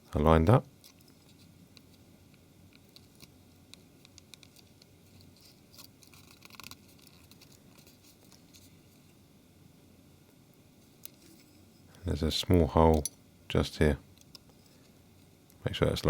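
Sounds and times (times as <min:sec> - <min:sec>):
light scratching: 0:04.1 - 0:09.2, 0:10.8 - 0:12.6.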